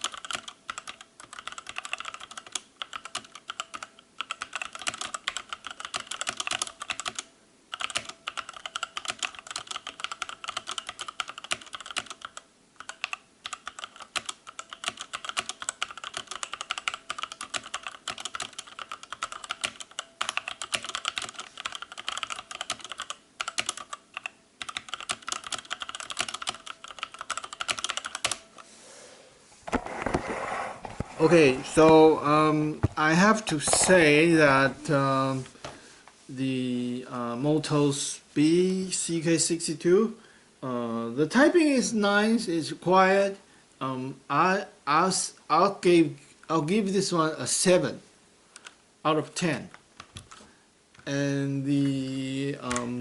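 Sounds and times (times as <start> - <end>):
mechanical keyboard typing: 0.0 - 28.4.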